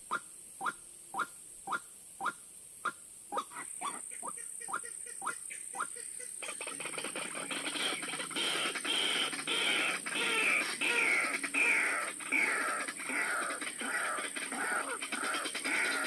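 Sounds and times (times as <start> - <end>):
waterhen repeated calls: 0.0 - 16.0.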